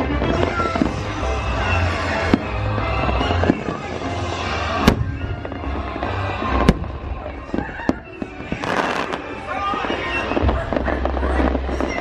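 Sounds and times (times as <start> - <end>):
loud music: 0.0 - 9.5
fireworks bursting: 0.0 - 12.0.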